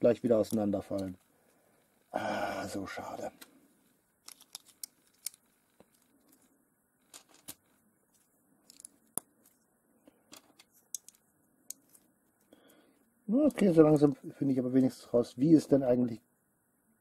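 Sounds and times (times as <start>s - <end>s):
plastic bricks clicking together: 4.2s - 6.0s, 8.7s - 9.0s.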